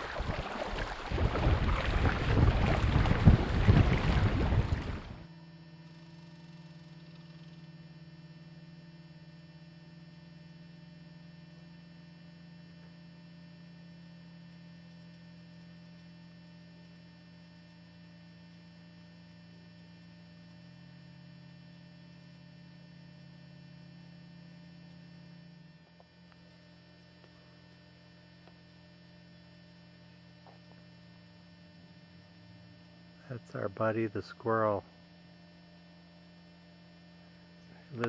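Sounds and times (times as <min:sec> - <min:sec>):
wind noise on microphone: 0:00.0 - 0:05.2
electrical hum: 0:00.0 - 0:38.0.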